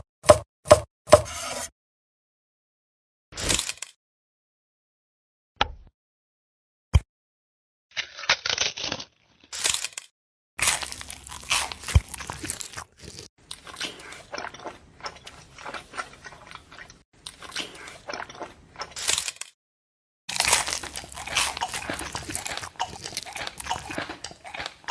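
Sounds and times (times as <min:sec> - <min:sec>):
crunching and chewing: 0:08.0 - 0:19.5, 0:20.3 - 0:24.9.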